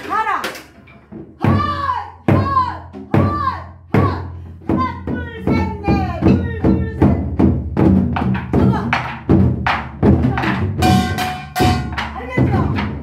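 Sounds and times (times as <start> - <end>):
barrel drum strikes: 5.9 - 13.0
backing music track: 8.5 - 12.9.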